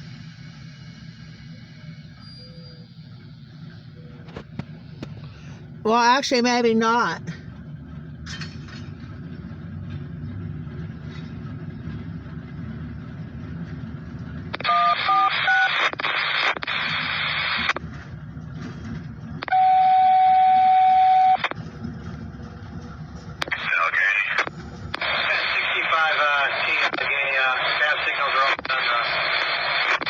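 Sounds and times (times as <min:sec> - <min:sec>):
low steady rumble: 0:00.0 - 0:30.0
radio static hiss: 0:14.5 - 0:17.8, 0:23.4 - 0:30.0
touch-tone beeps: 0:19.4 - 0:21.5.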